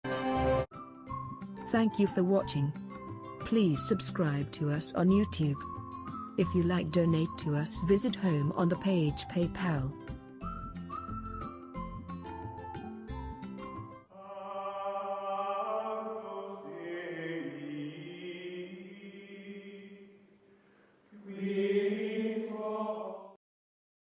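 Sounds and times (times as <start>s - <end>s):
choir-like chanting voices: 14.1s - 20.2s, 21.1s - 23.4s.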